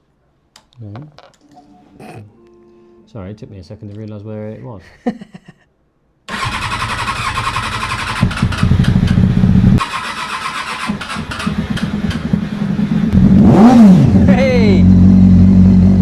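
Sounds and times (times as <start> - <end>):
motorcycle engine revving: 6.3 - 16.0.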